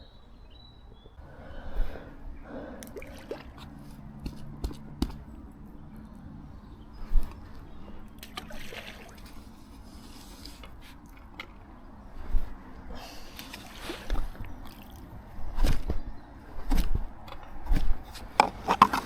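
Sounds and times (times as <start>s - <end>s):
water trickling and splashing: 2.8s - 6.4s, 7.1s - 16.0s.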